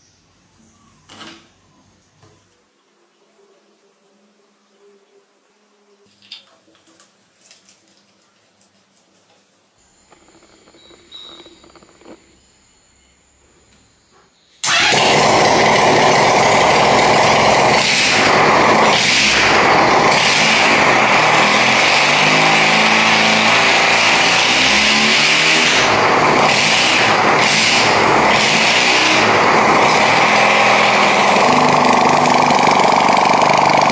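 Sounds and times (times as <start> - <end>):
motorcycle engine starting and revving: 10.1 - 12.4, 14.6 - 33.9.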